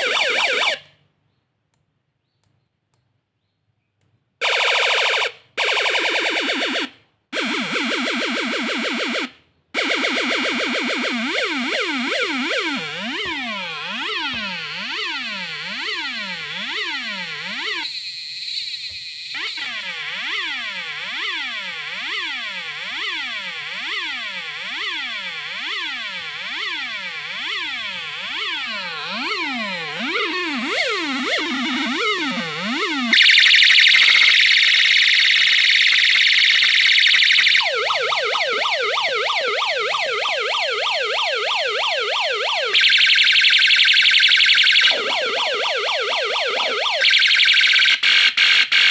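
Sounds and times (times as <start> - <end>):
electronic siren wailing: 0.0 - 0.9, 4.4 - 48.9
high-pitched siren tone: 0.0 - 0.9, 4.4 - 48.9.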